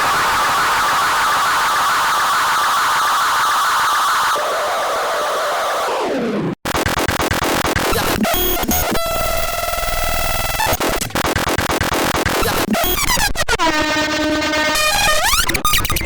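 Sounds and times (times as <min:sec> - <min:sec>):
glitchy electronic beats: 0:06.6 - 0:16.0.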